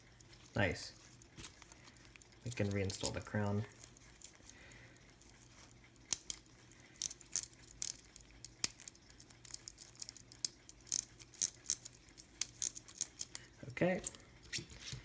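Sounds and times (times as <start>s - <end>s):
small metallic watch clicks: 3.8s - 14.2s.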